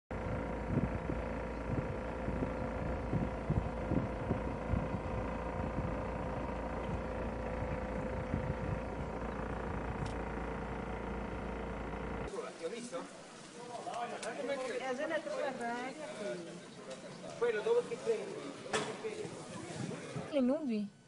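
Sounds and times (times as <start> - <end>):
wind buffeting microphone: 0.1 - 12.3
steady hum: 0.1 - 12.6.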